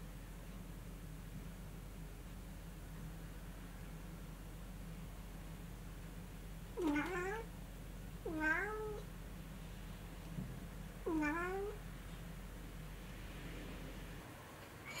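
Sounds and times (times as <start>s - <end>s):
cat meowing: 6.8s - 7.5s, 8.3s - 9.0s, 11.1s - 11.8s.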